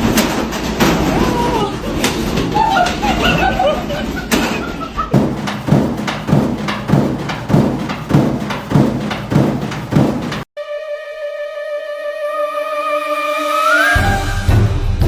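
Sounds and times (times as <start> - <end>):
washing machine thumping: 0.0 - 10.5.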